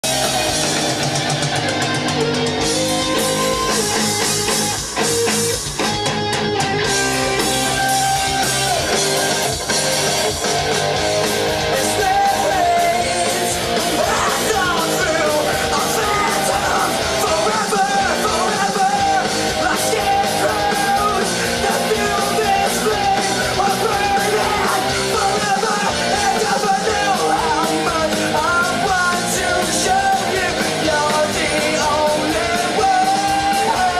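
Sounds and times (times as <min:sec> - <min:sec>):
rock band playing: 0:00.0 - 0:33.9
man singing: 0:11.6 - 0:33.9.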